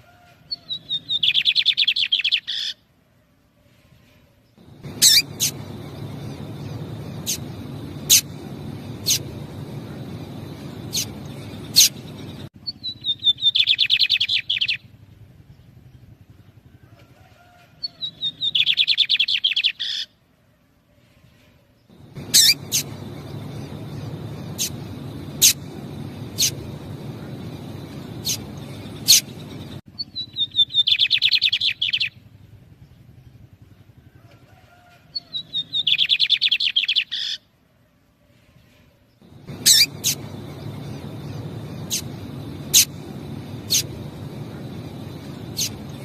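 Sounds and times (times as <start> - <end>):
rapid bird song dropping in pitch: 0.7 - 2.7, 4.6 - 14.8, 17.9 - 20.0, 22.0 - 32.2, 35.2 - 37.4, 39.2 - 46.0
sharp high bird call notes: 4.7 - 12.4, 22.1 - 29.8, 39.3 - 46.0.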